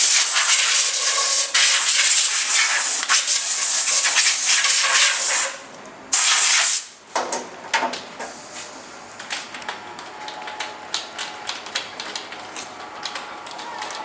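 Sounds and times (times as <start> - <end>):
loud hiss: 0.0 - 7.0.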